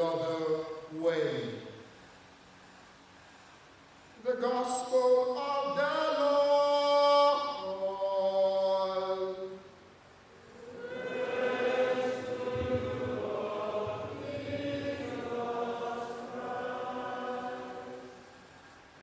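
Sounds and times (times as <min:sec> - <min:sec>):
voices chanting in unison: 0:10.4 - 0:18.4.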